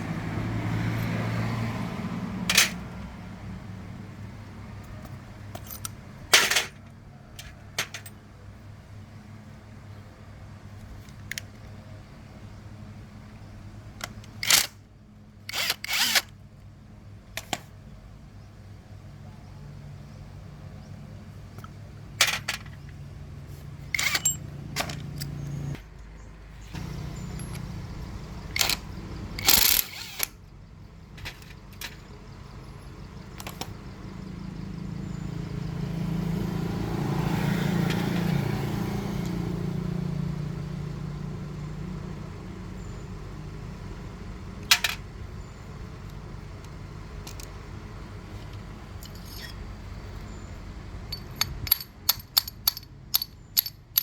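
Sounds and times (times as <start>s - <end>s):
metal tools clinking on workbench: 2.5s - 2.8s, 5.5s - 6.8s, 7.4s - 8.2s, 22.2s - 22.9s, 23.9s - 25.7s, 26.8s - 27.7s, 44.7s - 45.0s, 48.5s - 49.6s, 51.1s - 54.0s.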